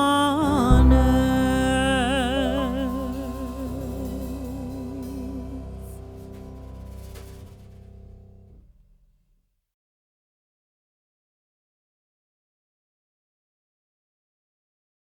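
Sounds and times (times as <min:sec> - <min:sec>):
person singing wavering note: 0:00.0 - 0:07.0
background music: 0:00.0 - 0:08.5.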